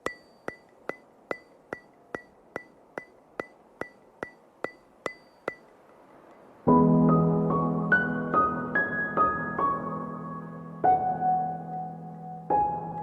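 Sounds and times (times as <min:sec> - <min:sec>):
sharp ringing ticks: 0:00.0 - 0:06.5.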